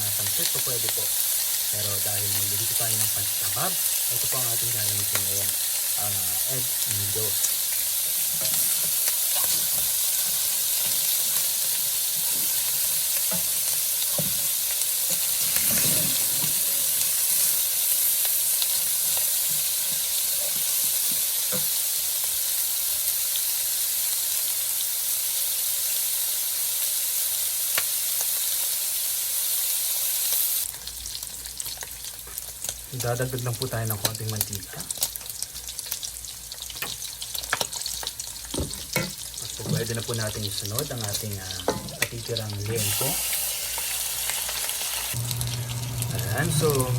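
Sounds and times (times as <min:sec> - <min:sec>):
pork sizzling in a pan: 0:00.0 - 0:46.9.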